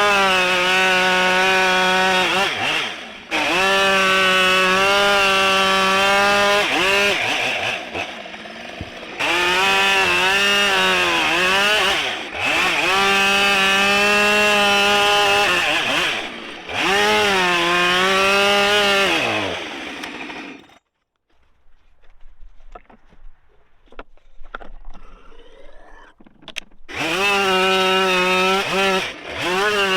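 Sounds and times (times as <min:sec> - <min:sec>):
chainsaw cutting log: 0:00.0 - 0:20.8, 0:26.9 - 0:29.9.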